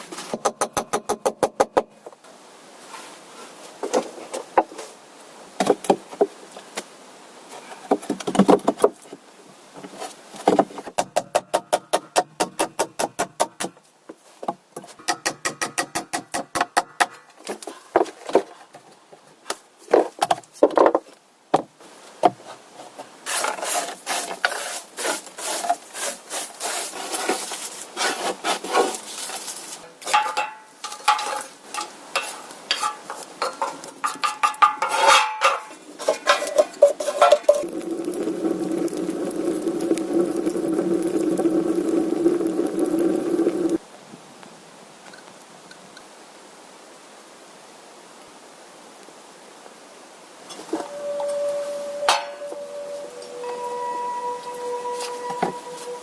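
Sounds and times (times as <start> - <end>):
irregular scraping and rubbing: 22.4 - 29.9, 32.2 - 43.8.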